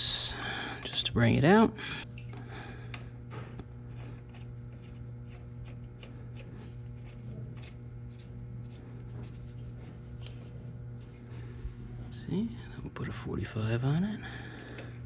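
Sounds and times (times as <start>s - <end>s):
steady low hum: 0.0s - 15.0s
metal pipe fittings clicking: 3.9s - 7.2s.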